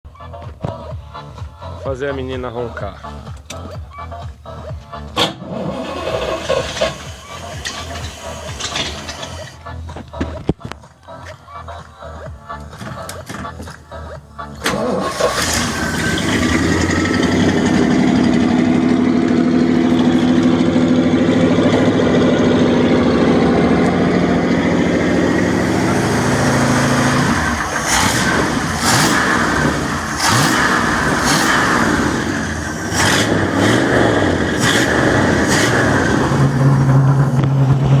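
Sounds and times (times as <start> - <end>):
low hum: 13.7 - 38.0
boat engine running: 14.6 - 38.0.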